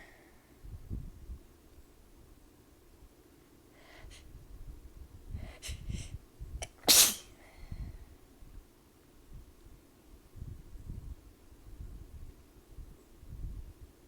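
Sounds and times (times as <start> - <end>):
catching breaths: 3.7 - 4.4, 5.3 - 6.2, 7.3 - 8.2
faint breath out: 5.4 - 6.2
person sneezing: 6.7 - 7.3.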